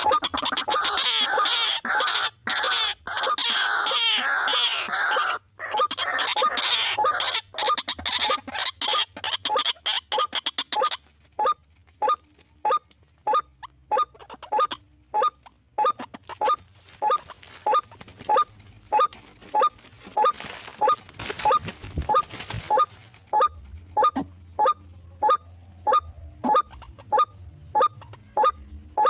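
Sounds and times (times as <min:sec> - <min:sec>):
waterhen calling harshly: 0:00.0 - 0:11.1.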